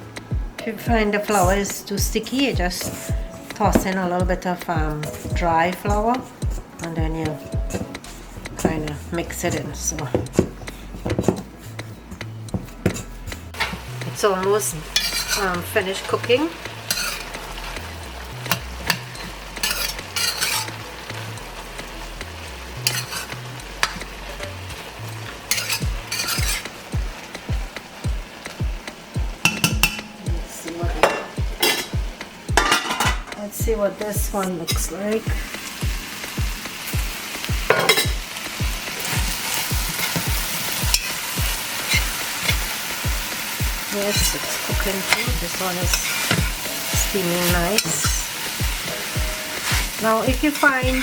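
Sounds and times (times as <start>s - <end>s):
faint background music bass: 0.0s - 51.0s
spoon knocking against pot: 3.7s - 4.0s, 8.6s - 11.5s, 29.4s - 30.2s, 31.0s - 33.4s
spoon scraping a pot: 12.5s - 14.2s, 14.8s - 15.7s, 16.8s - 20.8s, 22.8s - 24.1s, 25.2s - 26.8s, 41.8s - 42.6s, 43.9s - 51.0s
vegetables frying in a pot: 12.8s - 51.0s.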